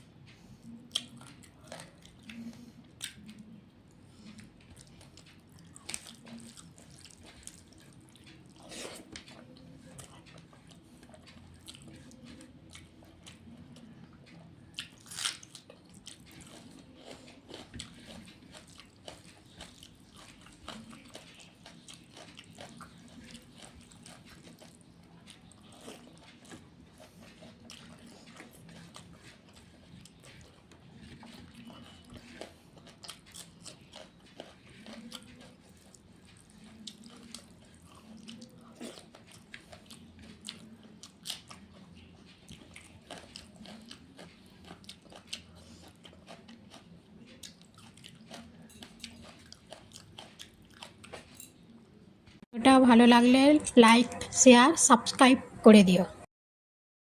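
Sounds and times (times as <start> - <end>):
person chewing food: 0.0 - 52.4
food crunch: 14.3 - 51.7.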